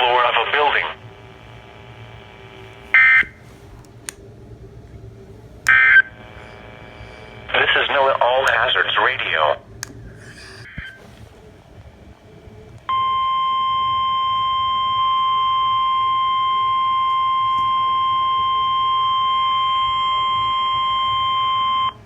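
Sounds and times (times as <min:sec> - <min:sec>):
steady alarm tone: 0:00.0 - 0:03.6, 0:05.4 - 0:11.1, 0:11.9 - 0:22.0
faint radio background noise: 0:00.0 - 0:12.9.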